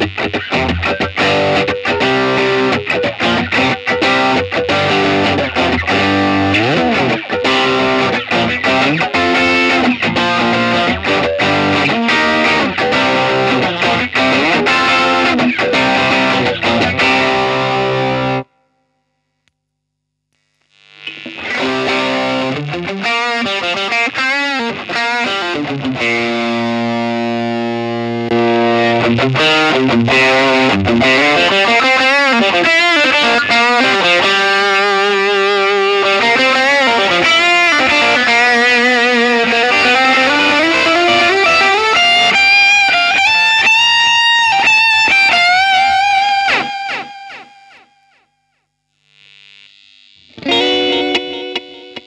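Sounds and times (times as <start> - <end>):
distorted electric guitar notes: 0.0 - 18.7, 20.8 - 48.3, 49.0 - 52.0.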